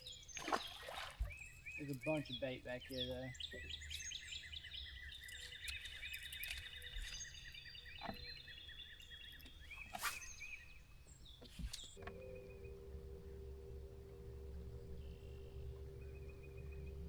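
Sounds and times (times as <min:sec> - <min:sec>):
birds chirping: 0:00.0 - 0:17.0
low steady rumble: 0:12.0 - 0:17.0.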